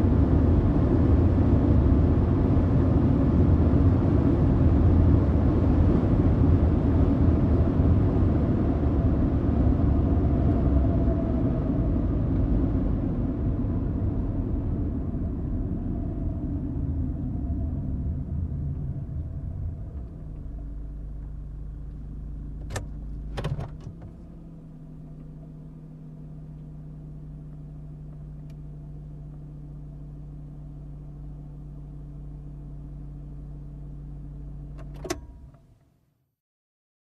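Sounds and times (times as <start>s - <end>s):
car engine idling: 17.7s - 34.9s.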